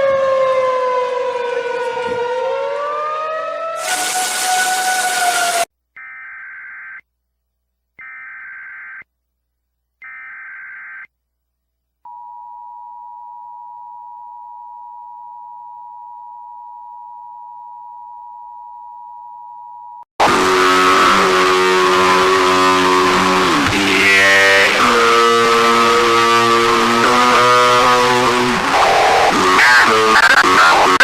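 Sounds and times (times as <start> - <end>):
harsh many-pitched blare: 20.2 - 31.0.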